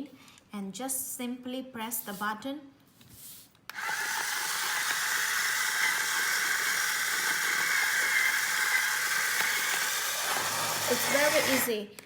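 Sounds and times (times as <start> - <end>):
electric coffee grinder whirring: 3.7 - 11.8.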